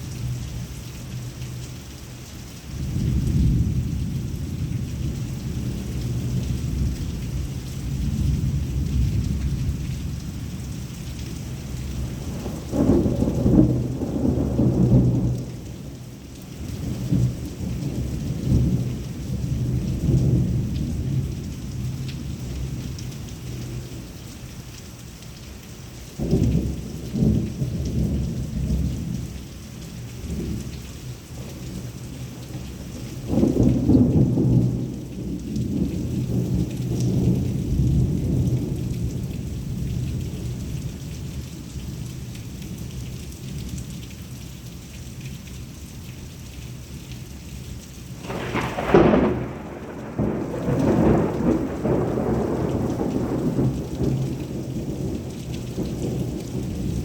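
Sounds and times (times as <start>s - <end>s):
heavy rain falling: 0.0s - 57.0s
thunder rumbling: 11.5s - 22.0s, 31.4s - 40.8s, 48.2s - 57.0s.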